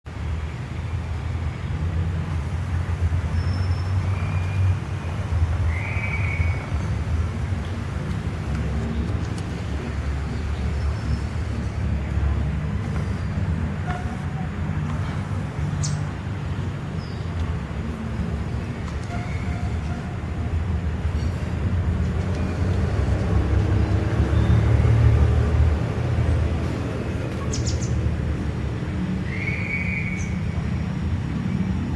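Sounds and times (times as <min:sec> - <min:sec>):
low rumble of street traffic: 0:00.0 - 0:31.9
high whistled bird calls: 0:05.6 - 0:07.0, 0:29.2 - 0:30.6.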